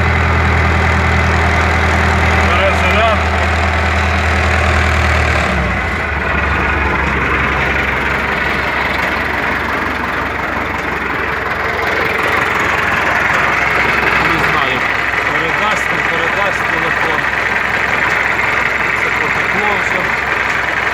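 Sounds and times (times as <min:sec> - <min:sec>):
tractor diesel engine idling: 0:00.0 - 0:20.9.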